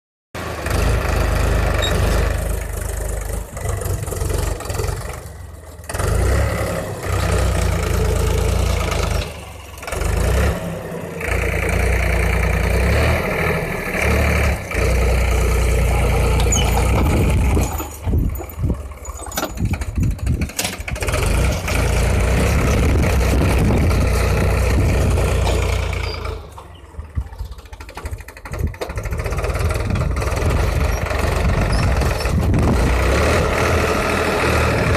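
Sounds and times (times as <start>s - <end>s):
tractor diesel engine rumbling: 0.4s - 34.9s.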